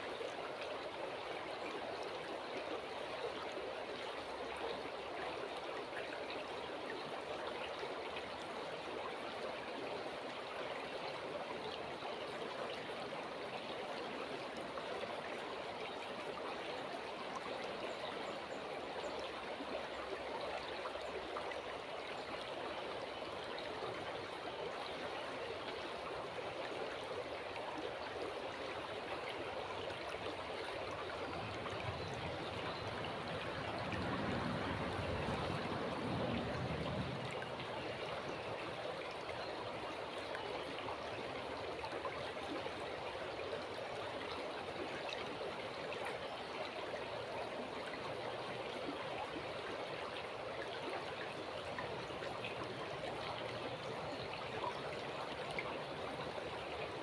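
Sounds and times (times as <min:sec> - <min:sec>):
river water rushing: 0:27.2 - 0:57.0.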